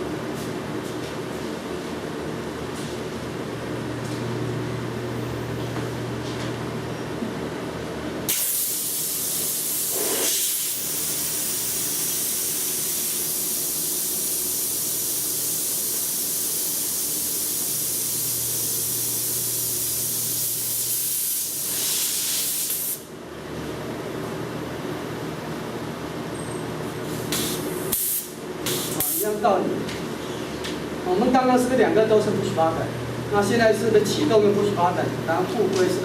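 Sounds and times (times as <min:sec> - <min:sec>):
compressed air hissing: 0:08.3 - 0:23.1, 0:27.2 - 0:29.3.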